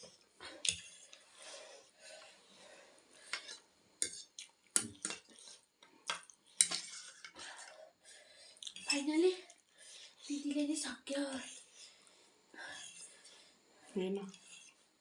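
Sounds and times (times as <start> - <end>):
utensils scraping a bowl: 6.6 - 7.4, 9.8 - 14.9.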